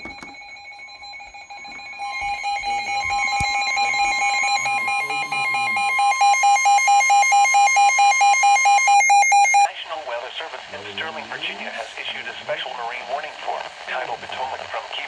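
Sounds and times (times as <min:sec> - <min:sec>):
radio alarm beeping: 0:00.0 - 0:09.7
steady weather radio alarm tone: 0:00.0 - 0:15.0.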